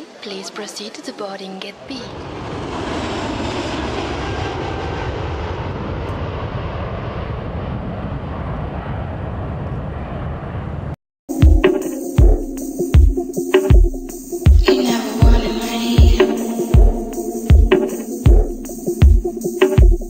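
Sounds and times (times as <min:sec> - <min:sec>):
airplane engine rumble: 0:02.0 - 0:11.0
music with a beat: 0:11.3 - 0:20.0.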